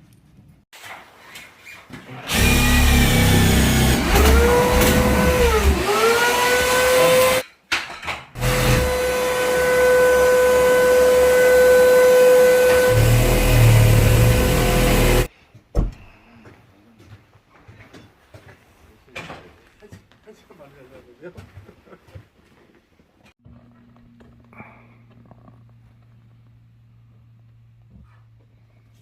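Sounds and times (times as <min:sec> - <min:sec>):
power tool motor whine: 0:02.3 - 0:07.4, 0:08.4 - 0:15.3.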